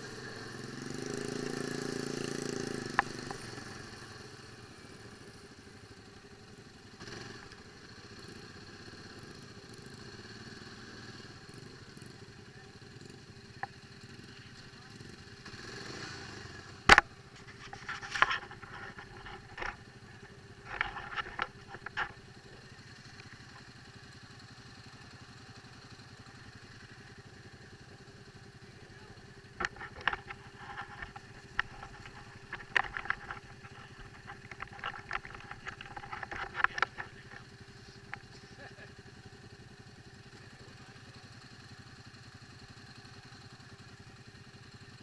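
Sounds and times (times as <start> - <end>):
engine idling: 0.0 - 45.0.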